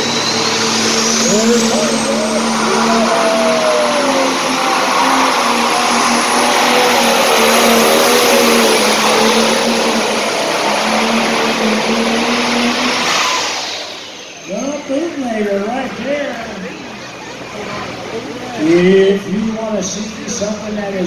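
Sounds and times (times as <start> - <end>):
thin high whistle: 0.0 - 4.2
tractor diesel engine under load: 0.0 - 21.0.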